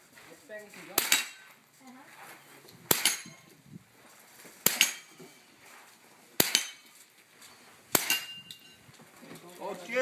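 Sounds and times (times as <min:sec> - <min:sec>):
rifle shots: 0:06.4 - 0:06.8
bullet ringing on steel target: 0:08.0 - 0:08.8.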